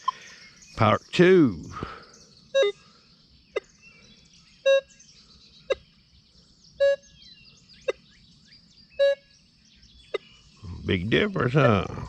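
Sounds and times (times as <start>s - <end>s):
metal detector beeps: 0.0s - 0.2s, 2.6s - 2.8s, 4.6s - 4.9s, 6.8s - 7.1s, 9.0s - 9.3s
birds chirping: 0.0s - 12.0s.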